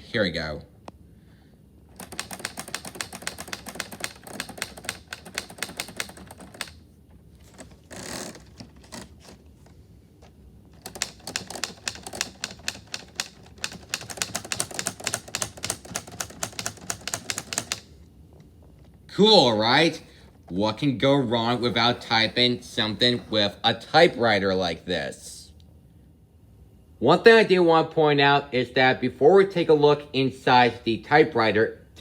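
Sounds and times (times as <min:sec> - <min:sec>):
plastic typewriter keys clicking: 0:01.9 - 0:06.8, 0:10.8 - 0:17.9.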